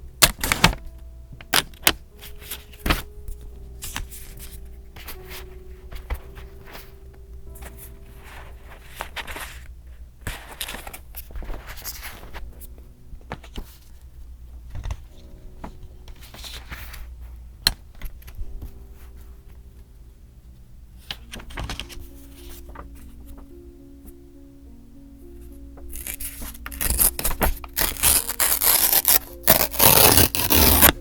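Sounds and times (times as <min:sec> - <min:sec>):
paper rustling: 0:01.6 - 0:07.0, 0:07.6 - 0:12.6, 0:13.3 - 0:19.2, 0:21.0 - 0:23.5, 0:25.9 - 0:31.0.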